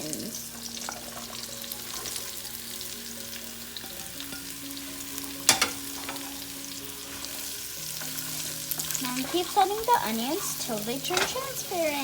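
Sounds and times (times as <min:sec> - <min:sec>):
onions sizzling in oil: 0:00.0 - 0:12.0
spatula striking pan: 0:05.4 - 0:06.4, 0:08.0 - 0:11.8.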